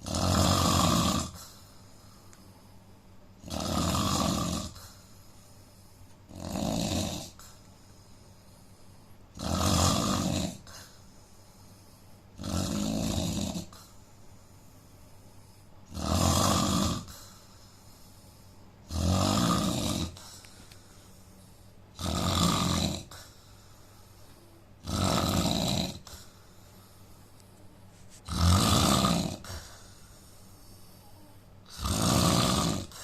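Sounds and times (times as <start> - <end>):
man snoring: 0.0 - 1.5, 3.4 - 5.0, 6.3 - 7.4, 9.3 - 10.9, 12.4 - 13.9, 15.9 - 17.5, 18.8 - 20.3, 21.9 - 23.4, 24.1 - 26.3, 28.3 - 33.0.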